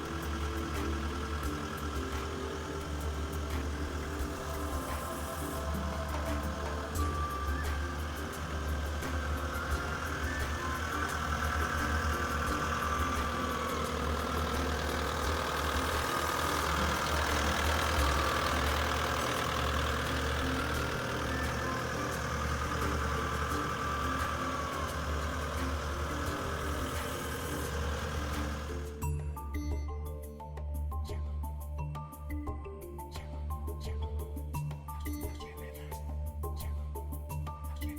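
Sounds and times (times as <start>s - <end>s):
diesel engine idling: 0.0s - 29.1s.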